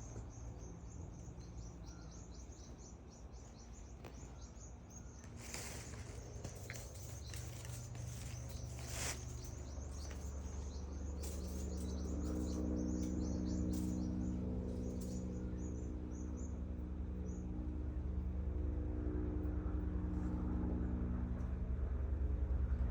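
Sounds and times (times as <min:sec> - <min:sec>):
small birds chirping: 0:00.0 - 0:18.0
low vehicle engine hum: 0:00.0 - 0:22.9.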